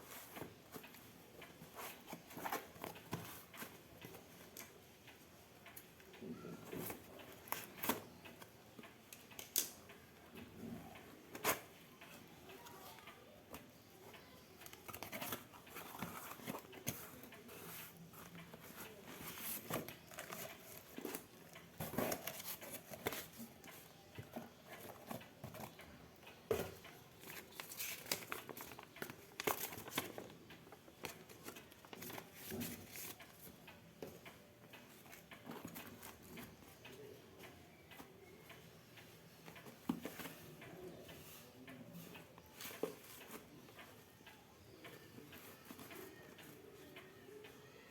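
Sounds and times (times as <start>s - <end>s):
plastic and cardboard crinkling: 14.6s - 25.8s, 26.5s - 30.4s.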